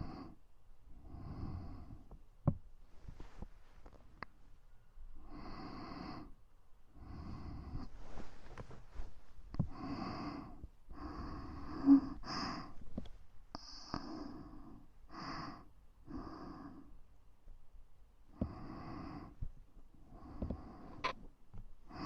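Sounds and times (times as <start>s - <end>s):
person breathing slowly: 0.0s - 2.2s, 5.2s - 17.1s, 18.3s - 21.2s.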